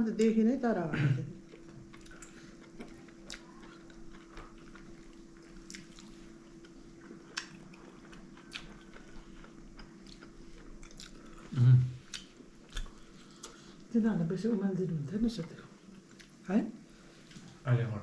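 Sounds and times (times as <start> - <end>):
faint steady hum: 0.0 - 18.0
quiet chewing: 1.4 - 13.9, 15.3 - 16.4.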